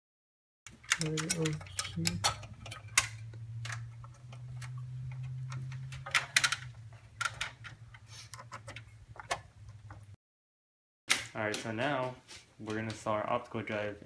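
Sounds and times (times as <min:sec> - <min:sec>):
screwdriver metallic clicks: 0:00.7 - 0:09.4.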